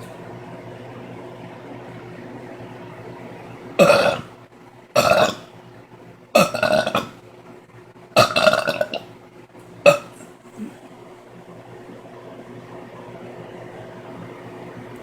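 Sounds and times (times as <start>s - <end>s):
woman burping loudly: 3.8s - 4.3s, 5.0s - 5.5s, 6.4s - 7.2s, 8.2s - 9.1s, 9.9s - 10.3s.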